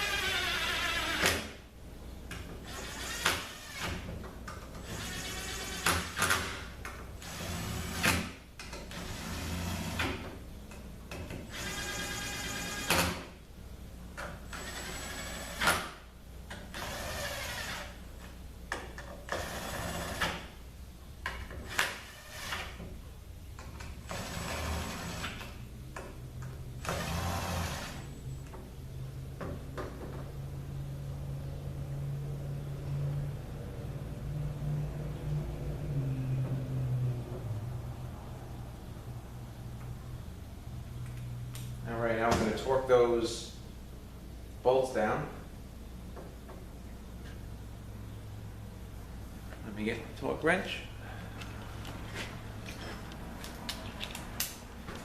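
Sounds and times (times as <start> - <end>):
metal parts clicking and tapping: 52.7 - 54.6.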